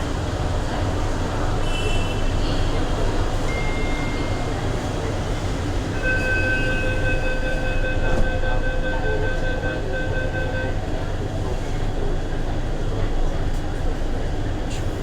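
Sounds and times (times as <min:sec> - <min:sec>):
train rumbling: 0:02.4 - 0:15.0.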